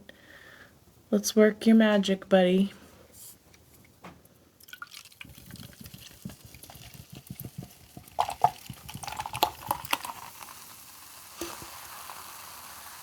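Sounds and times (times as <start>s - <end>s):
person gulping a drink: 4.6s - 10.6s.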